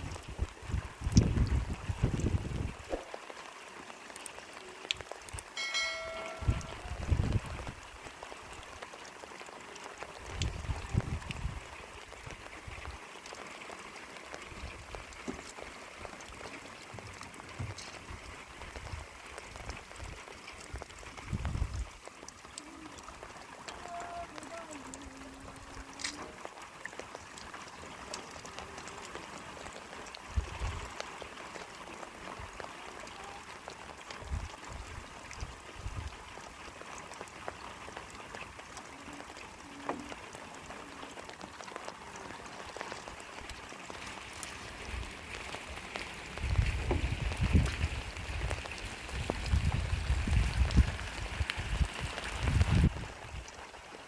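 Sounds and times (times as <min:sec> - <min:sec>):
rain pattering: 0:00.0 - 0:54.0.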